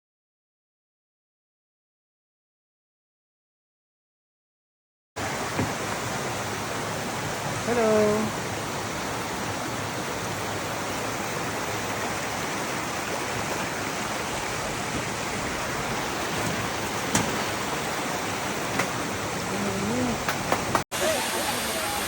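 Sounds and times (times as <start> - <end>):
waterfall rushing: 5.2 - 22.0
person speaking: 19.4 - 20.3.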